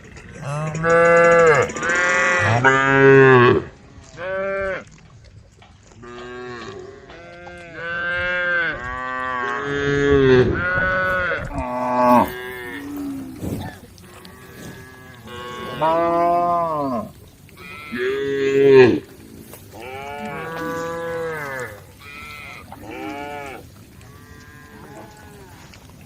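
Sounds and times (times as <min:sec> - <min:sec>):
cows mooing: 0:00.0 - 0:04.9, 0:06.0 - 0:26.0.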